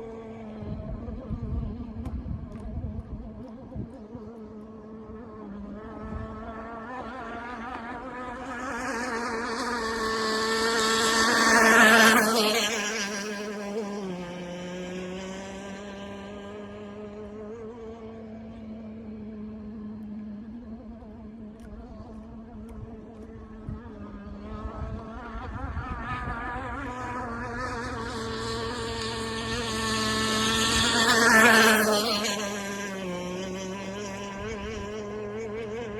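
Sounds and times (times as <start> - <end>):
model boat engine buzzing: 0.0 - 35.9.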